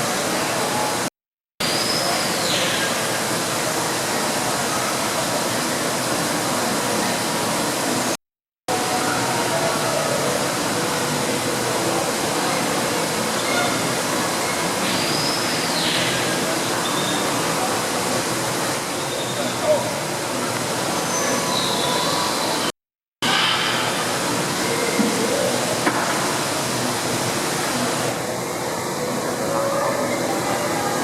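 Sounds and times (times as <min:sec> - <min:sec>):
falling water rushing: 0:02.2 - 0:31.0
faint murmur of voices: 0:08.7 - 0:26.4, 0:27.4 - 0:31.0
faint high sweeping call: 0:20.9 - 0:22.7.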